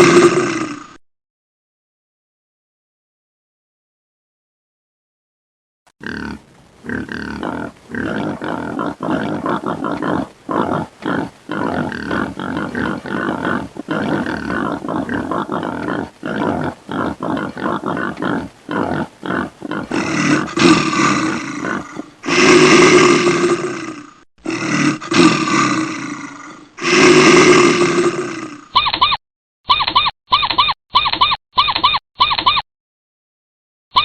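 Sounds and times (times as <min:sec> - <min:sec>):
animal growling and roaring: 0:00.0 - 0:01.0, 0:06.0 - 0:28.7.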